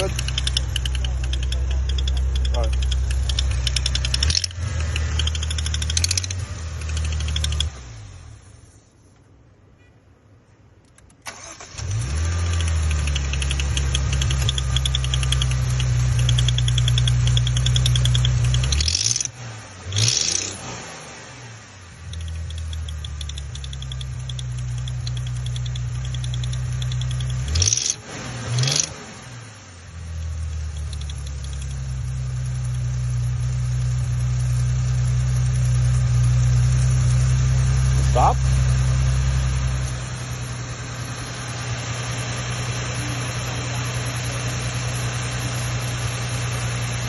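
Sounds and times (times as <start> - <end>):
fast light ticking: 0.0 - 7.7, 12.4 - 19.2, 22.0 - 28.0, 30.2 - 33.0
car engine running: 0.0 - 8.8, 11.3 - 47.0.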